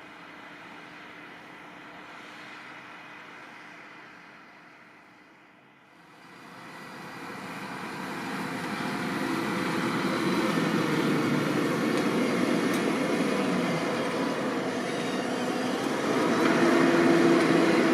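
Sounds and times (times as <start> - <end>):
tractor running under load: 5.9 - 17.9.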